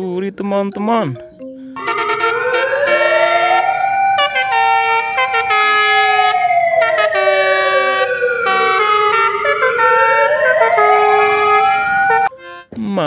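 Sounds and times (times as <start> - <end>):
tune of held stepped notes: 0.0 - 13.0
wailing siren: 1.8 - 12.3.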